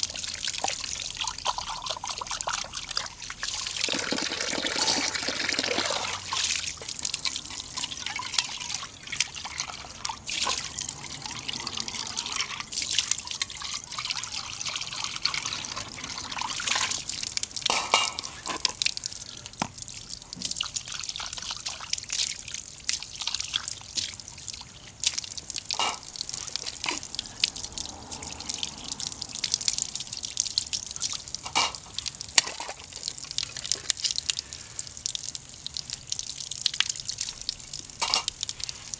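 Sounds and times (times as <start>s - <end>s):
pot of broth bubbling: 0.0s - 38.9s.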